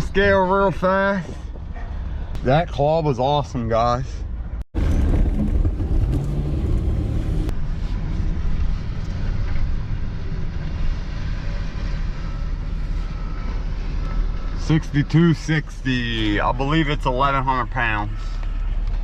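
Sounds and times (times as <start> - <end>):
truck engine rumbling: 4.8 - 19.0.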